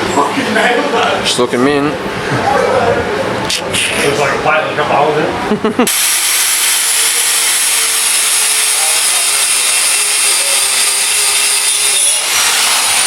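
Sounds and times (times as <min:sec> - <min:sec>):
angle grinder grinding steel: 0:05.9 - 0:13.0.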